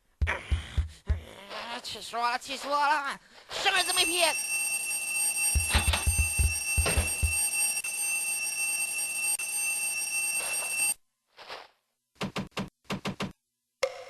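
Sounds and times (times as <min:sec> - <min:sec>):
electric bell ringing: 0:03.8 - 0:11.0
sharp knocks: 0:05.6 - 0:07.4.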